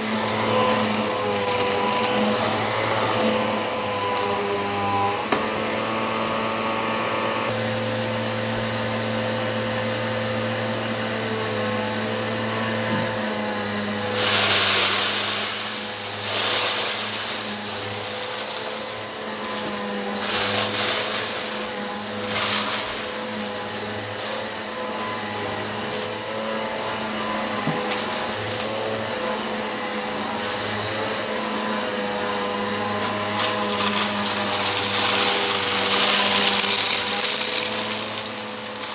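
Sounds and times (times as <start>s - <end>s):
vacuum sucking up debris: 0.0s - 7.6s, 13.0s - 38.9s
vacuum cleaner motor hum: 0.0s - 38.9s.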